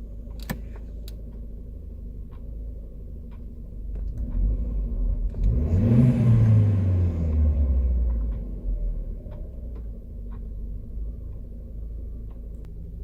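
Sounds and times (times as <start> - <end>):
car engine idling and revving: 0.0 - 13.0.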